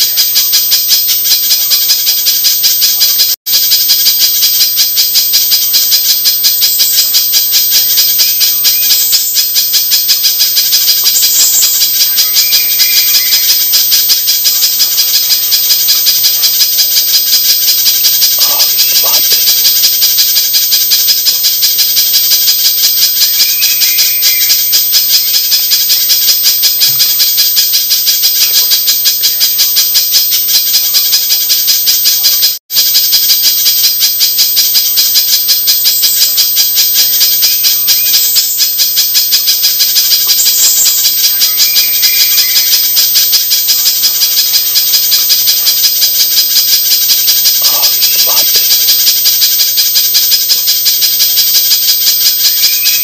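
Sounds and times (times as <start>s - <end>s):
rapid rattling bird call: 0.0s - 53.0s
short bird chirps: 10.7s - 19.8s, 23.1s - 24.9s, 39.8s - 45.2s, 52.3s - 53.0s.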